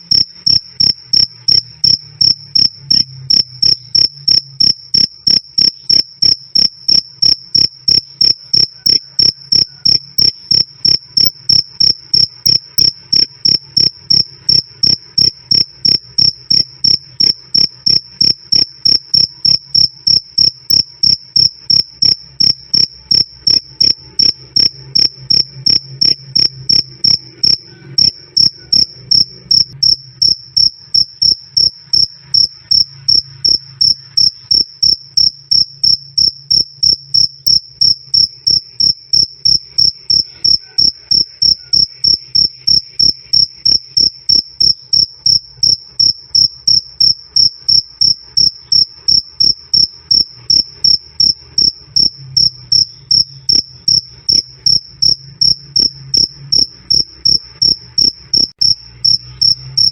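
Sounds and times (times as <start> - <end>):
cricket chirping: 0.0 - 59.9.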